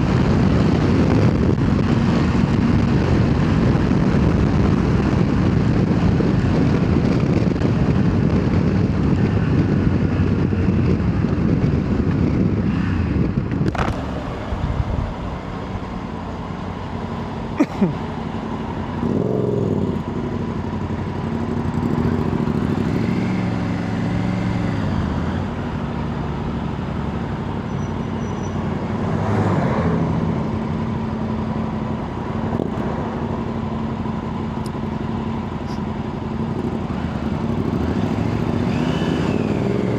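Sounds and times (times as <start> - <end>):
motorcycle engine: 0.0 - 39.9
wind rushing over helmet: 11.8 - 16.9.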